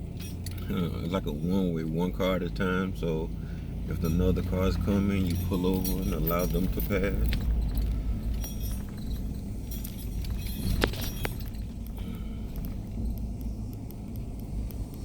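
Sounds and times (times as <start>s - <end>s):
car tyres and engine rumble: 0.0s - 15.0s
small rattles and clicks: 4.0s - 15.0s.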